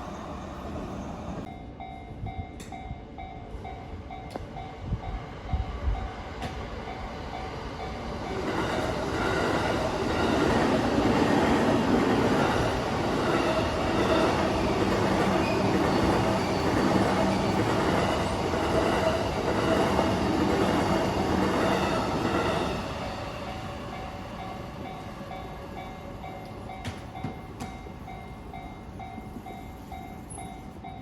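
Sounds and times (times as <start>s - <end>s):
train wheels clattering on rails: 8.2s - 25.0s, 25.8s - 31.0s
level crossing warning bell: 21.8s - 31.0s.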